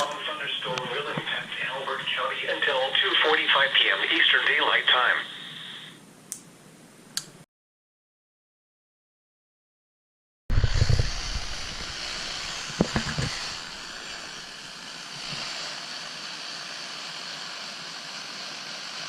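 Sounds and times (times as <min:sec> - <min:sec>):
radio static hiss: 0:00.0 - 0:06.2, 0:10.5 - 0:16.4.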